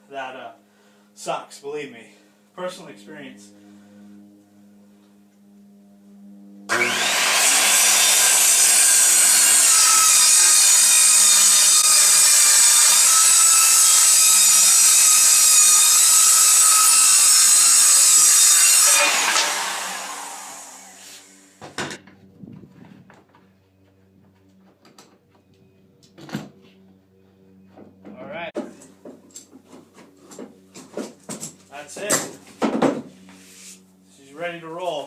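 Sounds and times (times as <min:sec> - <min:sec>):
circular saw cutting plywood: 0:06.7 - 0:21.6.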